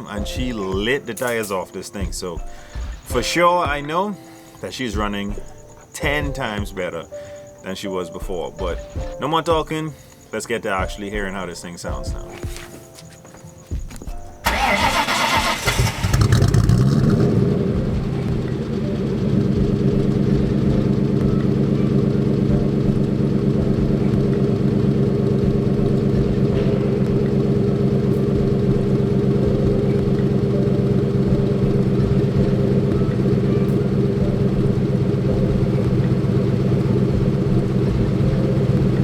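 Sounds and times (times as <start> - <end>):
car engine starting and idling: 14.3 - 39.0.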